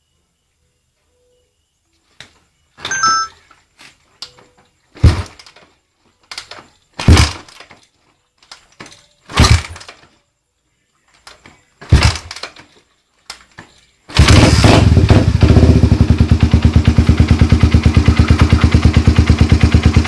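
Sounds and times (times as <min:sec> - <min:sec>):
motorcycle engine knocking: 0:11.9 - 0:12.3, 0:14.2 - 0:20.0
engine ticking: 0:14.2 - 0:20.0.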